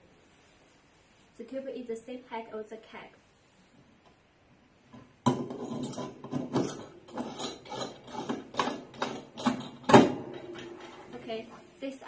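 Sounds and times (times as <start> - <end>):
metal parts clinking: 5.6 - 11.2.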